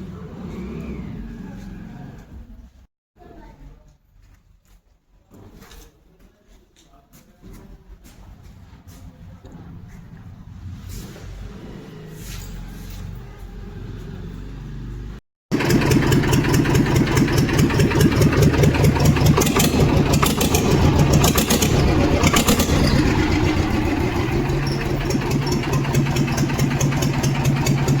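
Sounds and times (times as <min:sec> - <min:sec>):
tractor diesel engine open exhaust: 0:00.0 - 0:02.6, 0:08.9 - 0:28.0.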